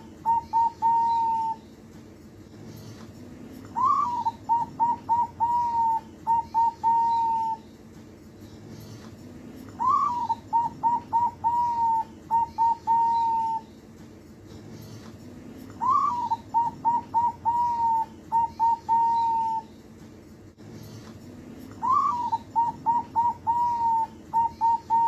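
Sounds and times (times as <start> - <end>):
dove cooing song: 0.0 - 1.6, 3.5 - 7.7, 9.2 - 13.7, 14.9 - 19.7, 21.6 - 25.0.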